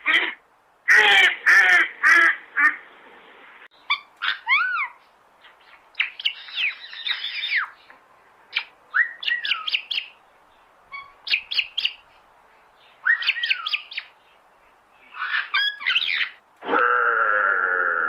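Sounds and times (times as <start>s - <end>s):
bird chirps and whistles: 13.0s - 14.1s.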